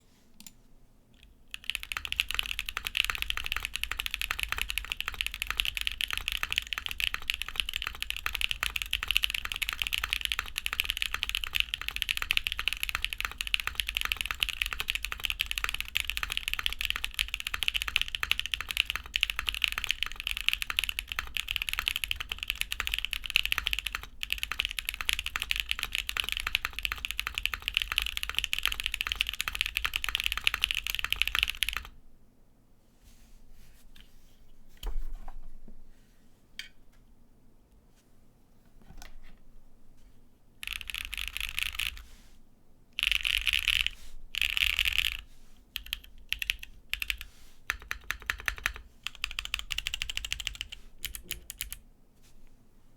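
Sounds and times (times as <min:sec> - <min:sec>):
fast mechanical keyboard typing: 0:01.5 - 0:31.9, 0:40.6 - 0:42.0, 0:43.0 - 0:51.8.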